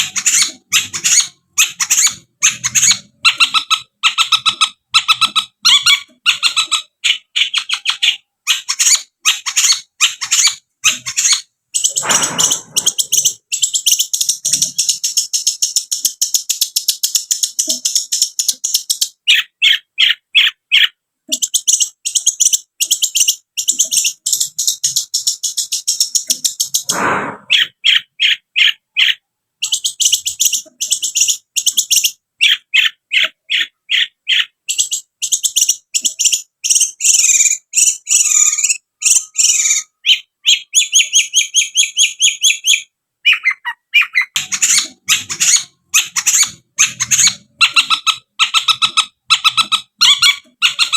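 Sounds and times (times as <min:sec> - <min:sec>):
bird singing fast trills: 0:00.0 - 0:50.9
harsh rasping bird bursts: 0:10.9 - 0:13.6, 0:26.7 - 0:28.0.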